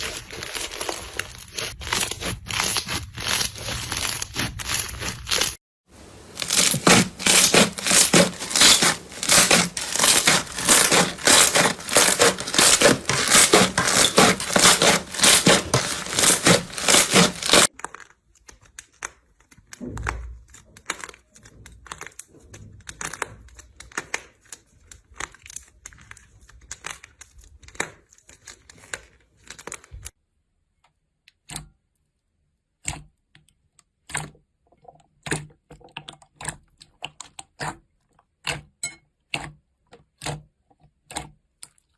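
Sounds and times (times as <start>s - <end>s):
slime crackling and popping: 0.0s - 30.0s.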